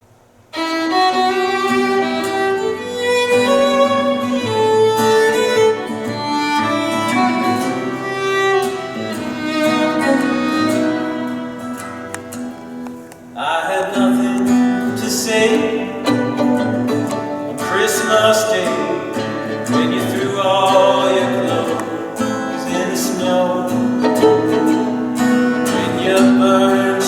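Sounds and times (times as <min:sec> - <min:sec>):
guitar: 0:00.3 - 0:27.0
violin playing long notes: 0:00.6 - 0:12.9, 0:15.3 - 0:27.0.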